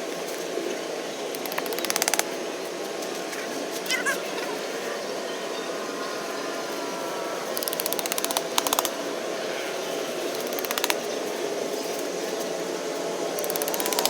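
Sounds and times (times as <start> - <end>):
steady background hiss: 0.0 - 14.0
rapid ratchet-like clicking: 1.4 - 2.3, 7.6 - 9.0, 10.3 - 11.0, 13.4 - 14.0.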